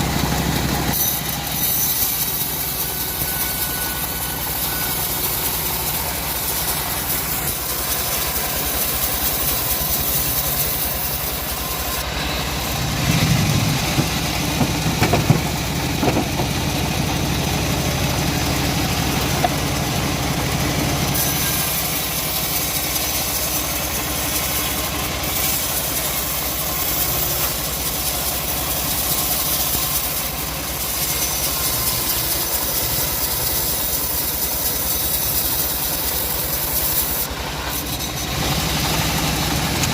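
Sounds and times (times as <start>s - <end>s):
chainsaw cutting wood: 0.9s - 16.7s, 20.9s - 39.9s
sharp knocks: 13.4s - 16.6s.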